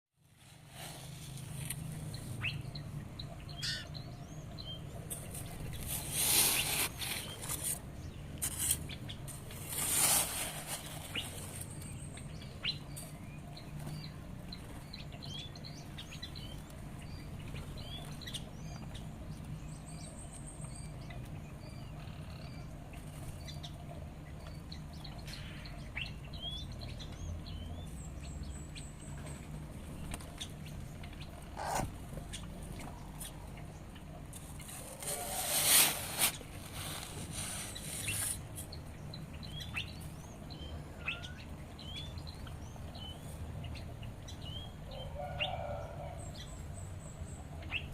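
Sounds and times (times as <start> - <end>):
small songbirds chirping: 0.2 - 47.9
rustling bursts: 9.6 - 11.7, 34.6 - 38.6.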